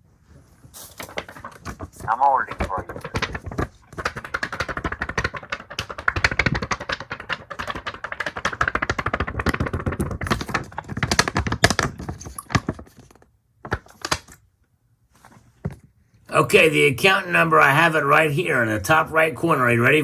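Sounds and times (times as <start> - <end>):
computer keyboard typing: 2.1 - 11.6.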